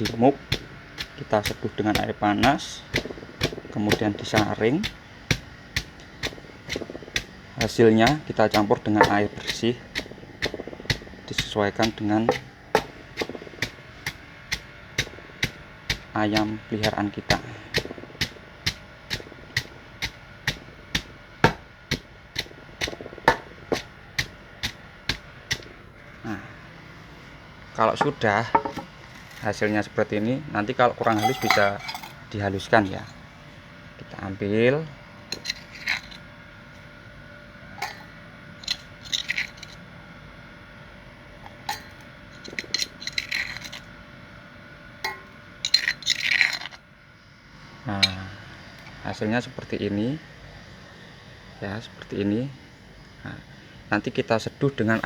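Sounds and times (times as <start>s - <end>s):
pestle pounding in mortar: 0.0s - 25.8s, 28.0s - 32.9s, 35.3s - 36.2s, 37.8s - 39.8s, 41.5s - 43.8s, 45.1s - 46.7s.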